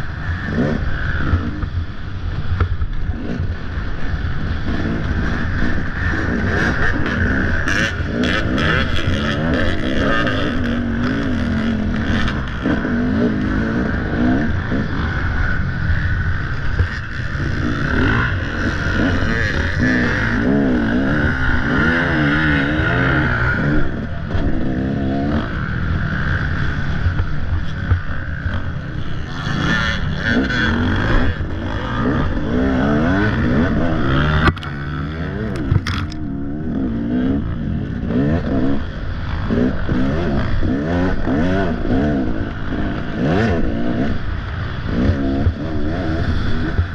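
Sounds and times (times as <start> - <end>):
dirt bike engine revving: 0.0 - 46.9.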